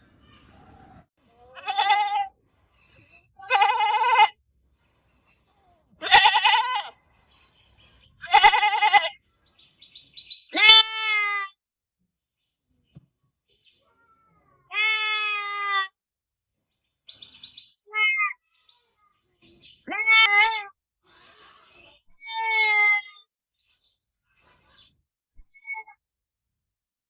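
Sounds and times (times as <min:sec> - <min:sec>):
goat bleating: 0:01.5 - 0:02.3, 0:03.4 - 0:04.4, 0:06.0 - 0:07.0, 0:08.2 - 0:09.2, 0:10.5 - 0:11.5, 0:14.7 - 0:15.9.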